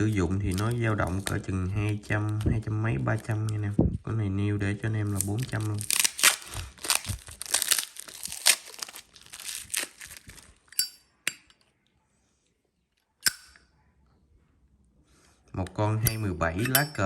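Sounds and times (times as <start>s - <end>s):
plastic wrapping crinkling: 0.0s - 3.7s, 5.0s - 10.7s.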